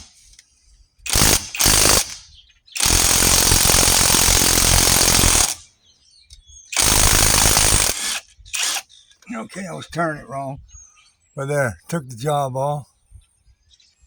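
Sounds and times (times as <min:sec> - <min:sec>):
impact wrench hammering: 0:01.1 - 0:02.2, 0:02.8 - 0:05.6, 0:06.8 - 0:08.8.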